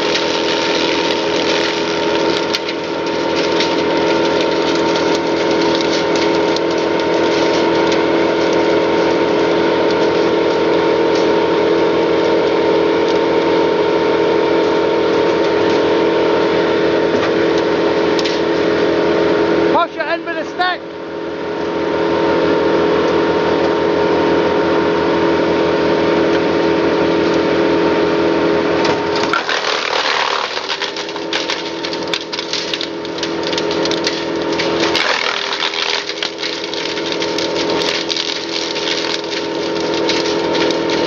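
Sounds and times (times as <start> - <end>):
wood crackling and snapping: 0.0 - 18.7, 28.8 - 41.0
wood chipper engine running: 0.0 - 41.0.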